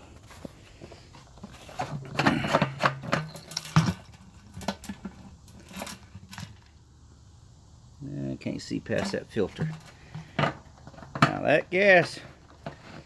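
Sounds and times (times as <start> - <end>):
engine parts clicking and rattling: 0.0 - 6.8.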